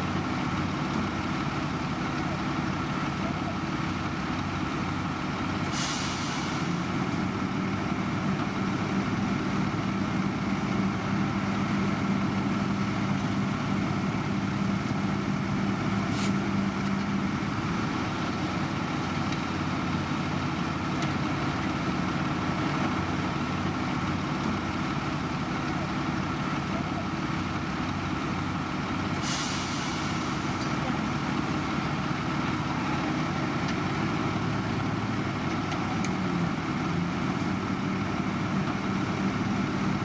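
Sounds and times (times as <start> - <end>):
diesel machinery running: 0.0 - 40.0
air hiss: 5.7 - 6.7, 29.2 - 30.6.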